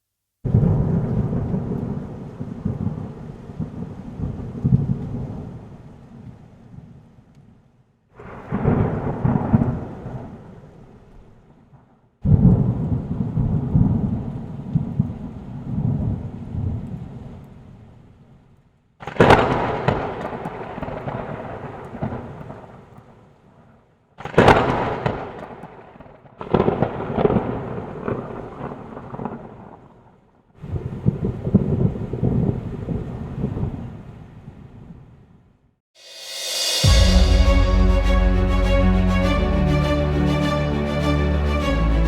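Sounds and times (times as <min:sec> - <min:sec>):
thunder claps rumbling: 0:08.2 - 0:10.7, 0:36.5 - 0:40.5.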